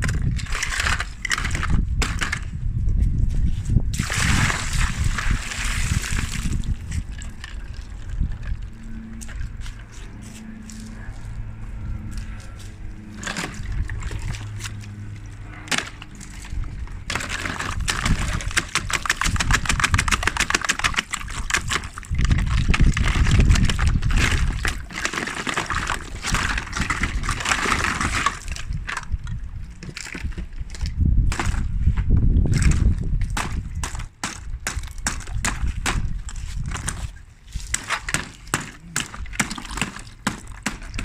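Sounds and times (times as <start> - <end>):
low rumble: 0.0 - 18.6
ice cubes crunching: 16.0 - 31.6.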